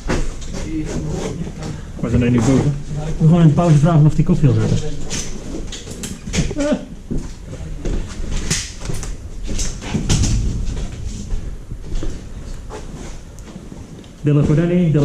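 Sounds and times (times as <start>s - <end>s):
low background rumble: 7.0s - 15.0s.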